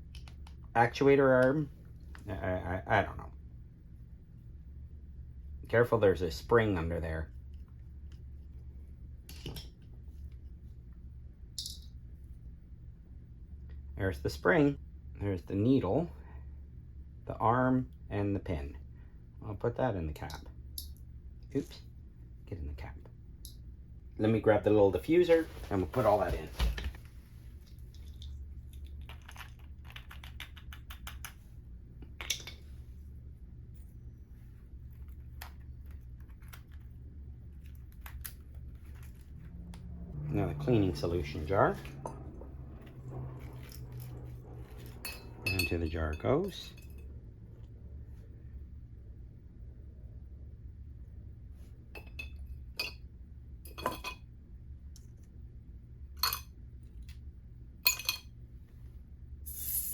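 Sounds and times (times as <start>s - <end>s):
steady low hum: 0.0s - 59.9s
small parts clinking in glass jar: 11.6s - 11.9s, 59.5s - 59.9s.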